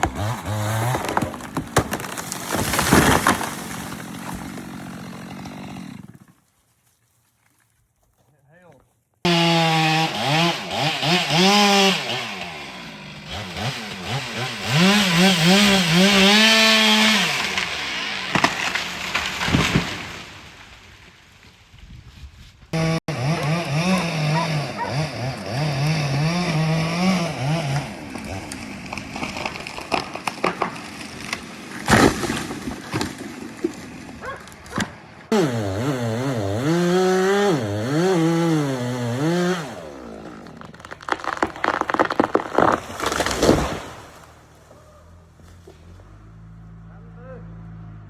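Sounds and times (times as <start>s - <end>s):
wood crackling and snapping: 0.0s - 6.3s, 16.6s - 21.7s, 27.7s - 35.0s, 39.8s - 44.8s
chainsaw cutting wood: 0.0s - 6.4s, 9.3s - 20.9s, 22.7s - 44.7s
sharp crack: 17.4s - 21.4s, 28.2s - 35.0s, 40.4s - 44.4s.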